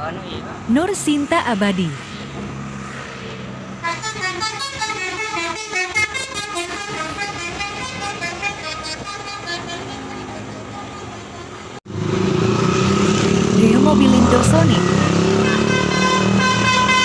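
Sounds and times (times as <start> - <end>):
musical bus horn melody: 3.8 - 11.8, 14.2 - 17.0.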